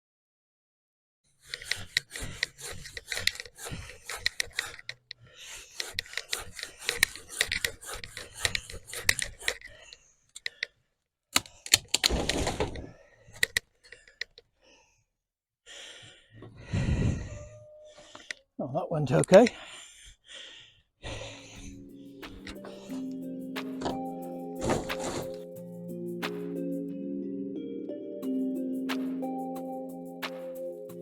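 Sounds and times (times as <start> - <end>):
hand saw cutting wood: 1.3 - 9.9, 21.4 - 24.0, 24.6 - 25.4.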